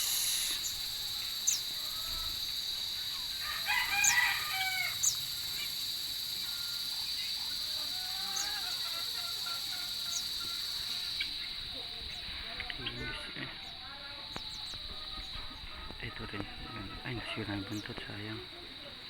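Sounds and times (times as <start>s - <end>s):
steady high-pitched drone: 0.0s - 3.4s
small birds chirping: 0.0s - 19.0s
rooster crowing: 0.8s - 5.2s, 7.7s - 10.7s.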